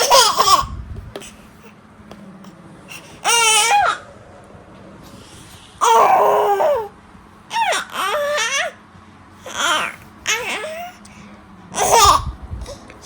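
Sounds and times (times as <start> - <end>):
baby babbling: 2.9 - 4.0, 5.8 - 6.9, 7.5 - 8.8, 9.4 - 11.0, 11.8 - 12.3.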